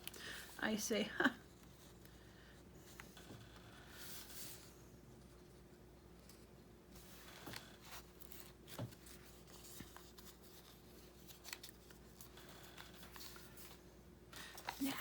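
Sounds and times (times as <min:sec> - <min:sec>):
low background hum: 0:00.0 - 0:15.0
paper rustling: 0:06.2 - 0:13.8, 0:14.4 - 0:15.0.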